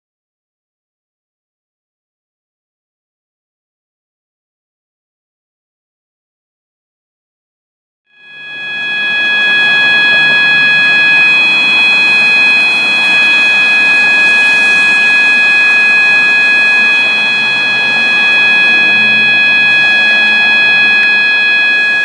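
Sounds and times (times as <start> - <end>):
fire alarm horn steady tone: 8.1 - 22.0.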